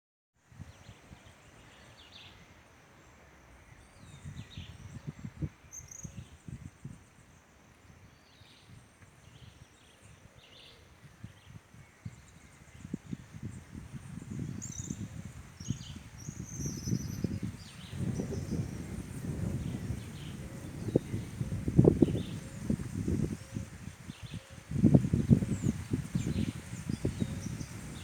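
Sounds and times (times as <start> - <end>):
birds chirping: 14.2 - 28.0.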